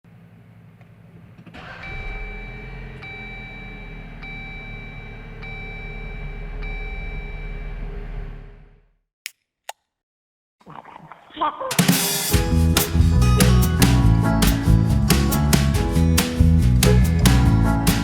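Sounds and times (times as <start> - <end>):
car engine starting and idling: 0.9 - 8.9
in-car warning chime: 1.6 - 8.2.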